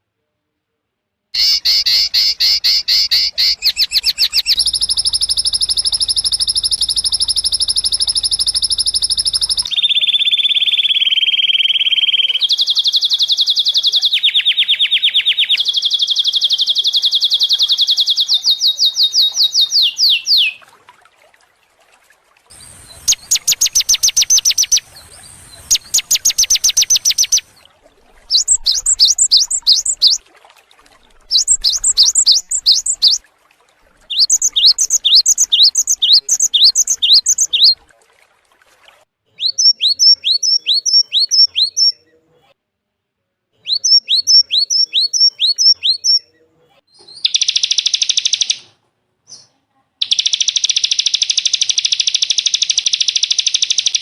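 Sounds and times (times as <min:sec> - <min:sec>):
quick down-slurred bird notes: 0:01.4 - 0:09.9, 0:22.5 - 0:30.2, 0:31.0 - 0:33.2, 0:34.0 - 0:37.8
songbird trilling: 0:01.4 - 0:20.6, 0:22.5 - 0:30.2, 0:31.1 - 0:33.2, 0:34.0 - 0:37.8, 0:39.4 - 0:42.0, 0:43.7 - 0:46.2.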